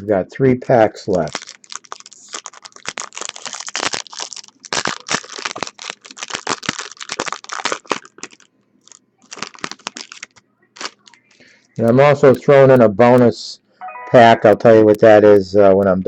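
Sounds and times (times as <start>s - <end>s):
foil wrapper crinkling: 1.1s - 11.5s.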